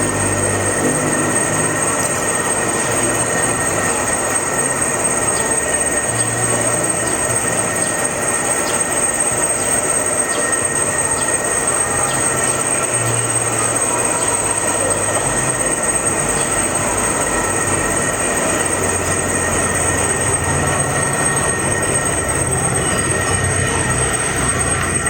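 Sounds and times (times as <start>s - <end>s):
high-pitched metallic machine whine: 0.0s - 25.0s
low machine hum: 0.0s - 25.0s.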